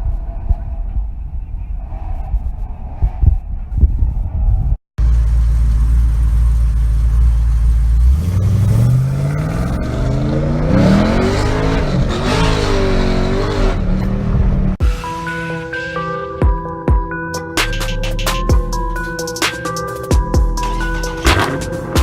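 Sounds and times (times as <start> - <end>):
car engine idling and revving: 5.0 - 16.7, 20.2 - 22.0.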